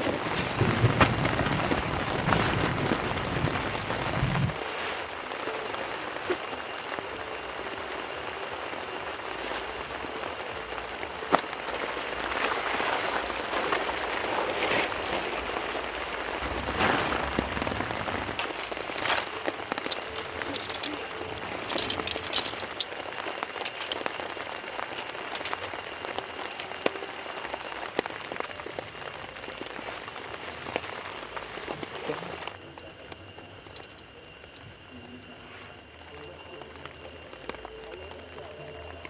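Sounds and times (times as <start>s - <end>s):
steady rain falling: 0.0s - 39.0s
low rumble: 16.2s - 19.0s.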